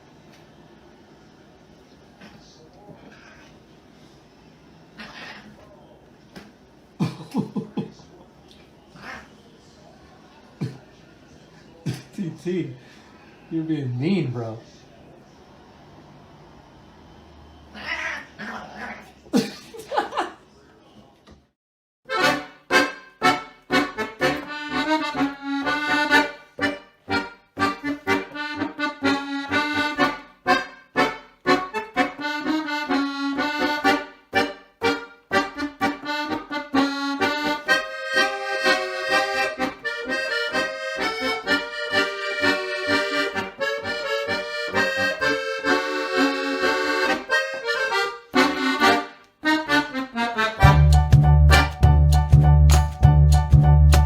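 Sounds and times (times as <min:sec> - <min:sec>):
lively accordion music with beat: 0:22.1 - 0:54.0.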